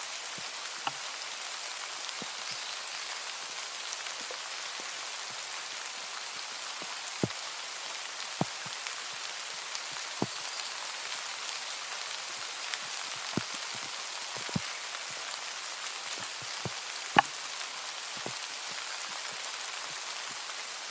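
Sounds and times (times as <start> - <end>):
steady rain hiss: 0.0 - 20.9
raindrops ticking close by: 0.1 - 20.9.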